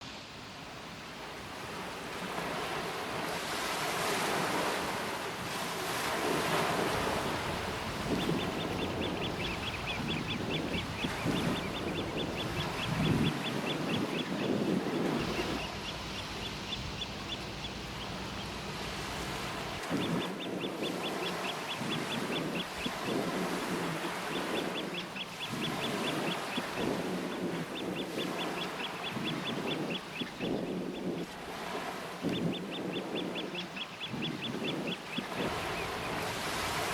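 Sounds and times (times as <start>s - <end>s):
sea waves washing on shore: 0.0s - 36.9s
wind rumbling on microphone: 0.4s - 36.9s
oystercatchers piping: 6.5s - 31.4s, 32.2s - 36.6s.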